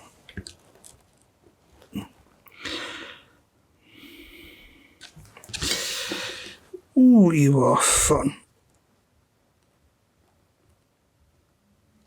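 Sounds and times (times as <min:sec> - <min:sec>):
breathy exhales: 0:02.6 - 0:03.3, 0:03.9 - 0:06.6.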